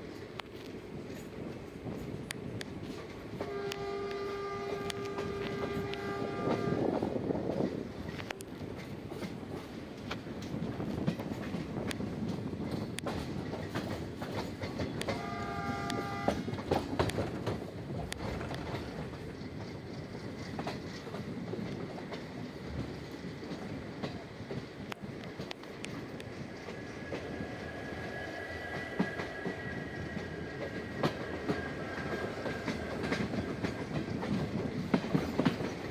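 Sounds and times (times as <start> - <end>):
train wheels clicking over rail joints: 0.0 - 35.9
locomotive horn: 3.4 - 7.0, 15.0 - 16.8.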